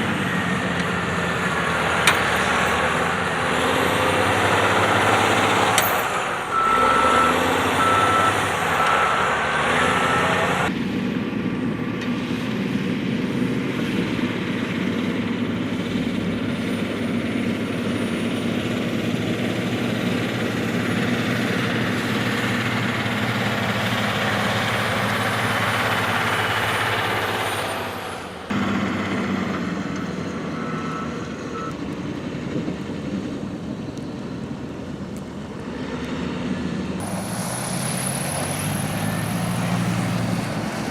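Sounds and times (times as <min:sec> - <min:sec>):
truck reversing alarm beeping: 0:00.0 - 0:10.7, 0:21.8 - 0:32.2
traffic and engine noise: 0:00.0 - 0:40.9.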